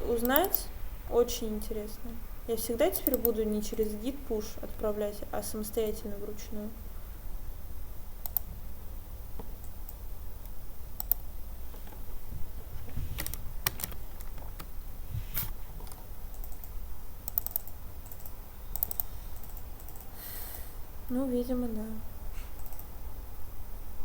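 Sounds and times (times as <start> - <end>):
steady low hum: 0.0 - 24.0
keyboard keys clicking: 13.2 - 14.7, 15.8 - 20.1.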